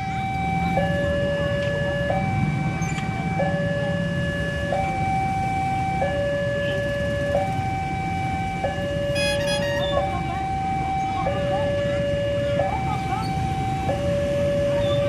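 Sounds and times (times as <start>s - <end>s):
two-tone warning alarm: 0.0s - 15.0s.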